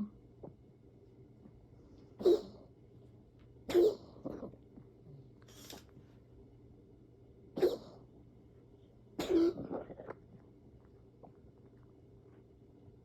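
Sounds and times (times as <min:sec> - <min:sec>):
person coughing: 0:09.2 - 0:09.9.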